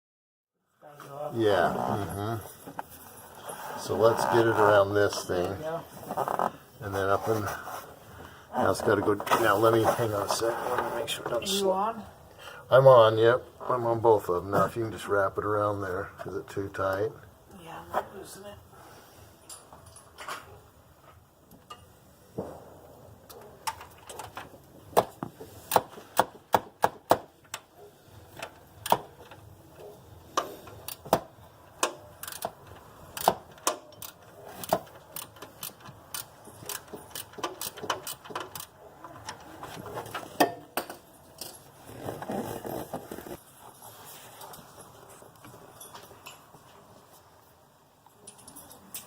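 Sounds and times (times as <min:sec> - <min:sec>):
rustling: 0:01.0 - 0:11.6, 0:41.2 - 0:47.6
metallic clicks of hand tools: 0:30.4 - 0:39.4.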